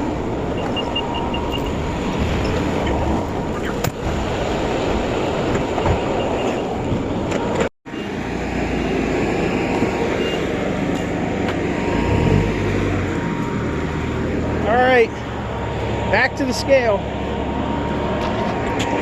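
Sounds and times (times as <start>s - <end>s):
vehicle driving with rattling: 0.0s - 19.0s.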